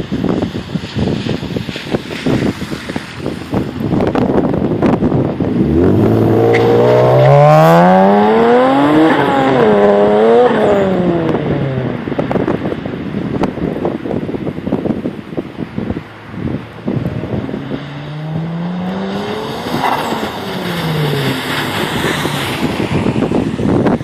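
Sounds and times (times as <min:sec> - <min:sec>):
car engine revving: 0:05.2 - 0:12.1, 0:16.3 - 0:22.8.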